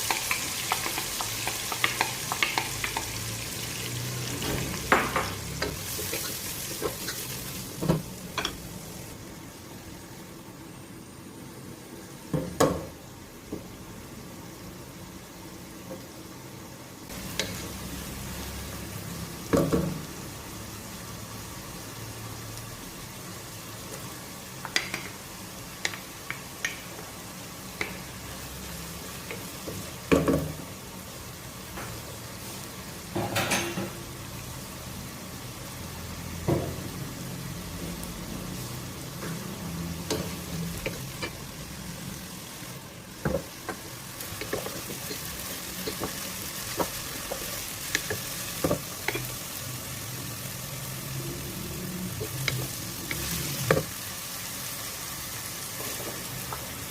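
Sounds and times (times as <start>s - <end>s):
food sizzling in hot oil: 0.0s - 10.4s, 11.9s - 56.9s.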